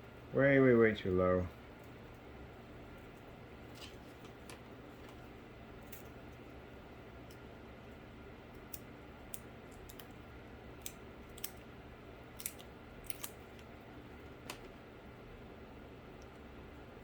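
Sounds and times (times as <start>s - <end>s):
faint low hum: 0.0s - 17.0s
sharp clicks and snips: 8.6s - 10.2s, 10.8s - 11.7s, 12.4s - 13.7s.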